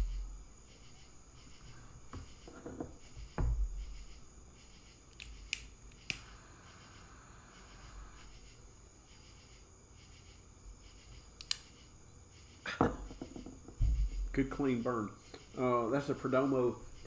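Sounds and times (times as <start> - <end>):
soft steady hiss: 0.0 - 17.0
low thumps on table: 2.1 - 4.1, 12.8 - 14.4
sharp clicks: 5.1 - 6.4, 11.4 - 11.7.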